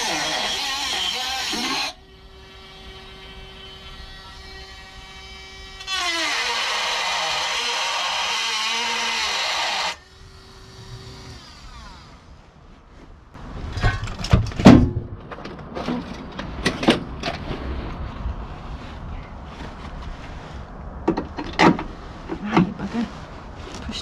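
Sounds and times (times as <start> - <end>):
rotary tool cutting steel: 0.0 - 12.2
rotary tool whining: 0.0 - 12.4.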